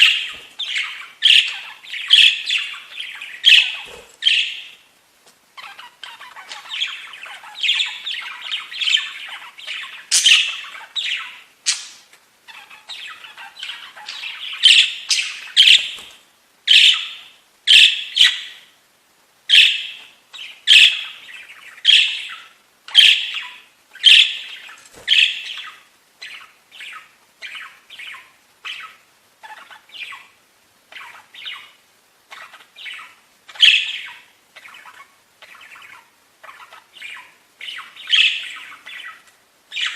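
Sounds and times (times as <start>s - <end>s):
budgerigars squawking: 0.0s - 4.8s, 5.6s - 11.9s, 19.5s - 30.3s, 30.9s - 39.9s.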